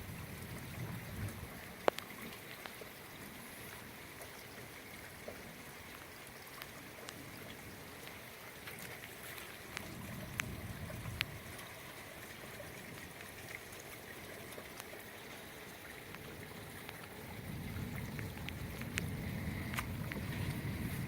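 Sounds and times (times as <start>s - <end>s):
wind buffeting microphone: 0.0s - 1.6s, 9.8s - 11.8s, 17.1s - 21.0s
floodwater rushing: 0.0s - 21.0s.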